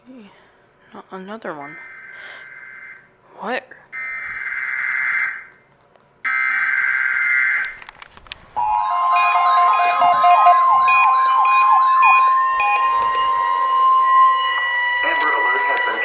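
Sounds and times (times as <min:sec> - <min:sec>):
siren-like electronic alert tone: 0:01.7 - 0:03.0, 0:08.6 - 0:16.0.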